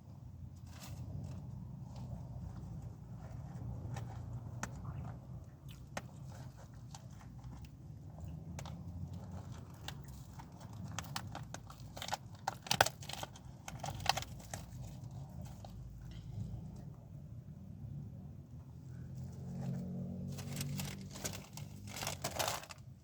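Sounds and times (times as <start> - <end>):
chewing and crunching: 0.7 - 16.9.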